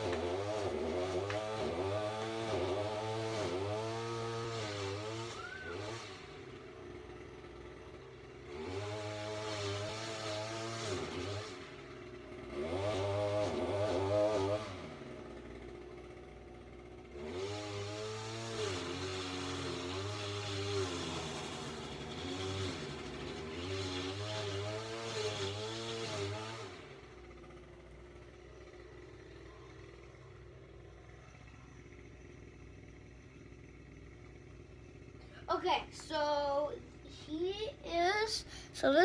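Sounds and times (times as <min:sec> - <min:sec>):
engine revving up and down: 0:00.0 - 0:06.6, 0:08.2 - 0:15.9, 0:16.8 - 0:30.0.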